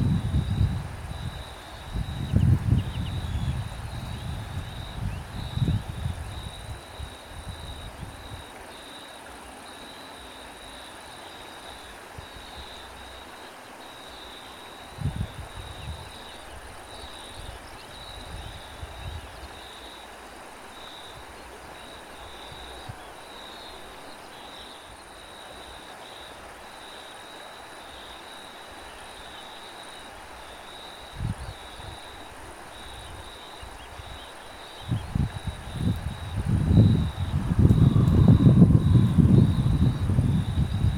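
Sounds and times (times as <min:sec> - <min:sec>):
wind gusting on microphone: 0:00.0 - 0:08.5, 0:14.9 - 0:19.6, 0:31.1 - 0:34.2, 0:34.8 - 0:40.9
crickets chirping: 0:00.0 - 0:40.9
soft outdoor hiss: 0:00.0 - 0:40.9.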